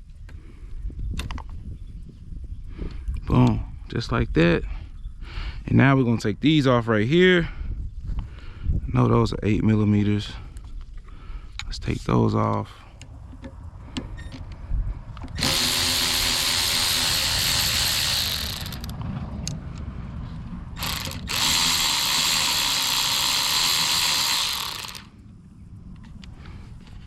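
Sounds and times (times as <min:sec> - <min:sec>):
ratchet wrench turning: 0:15.3 - 0:19.0, 0:20.8 - 0:25.1.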